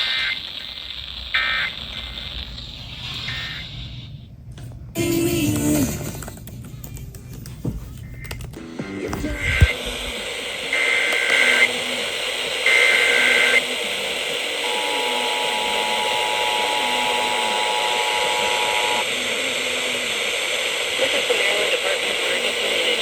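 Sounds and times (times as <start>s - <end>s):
radio static hiss: 0.0s - 4.4s, 8.0s - 23.0s
two-tone attention signal: 14.6s - 19.0s.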